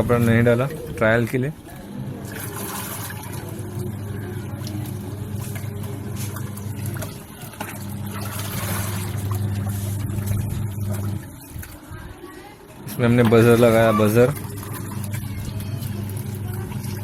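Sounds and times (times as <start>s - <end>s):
washing machine motor humming: 0.0s - 17.0s
water and clothes churning: 0.0s - 17.0s.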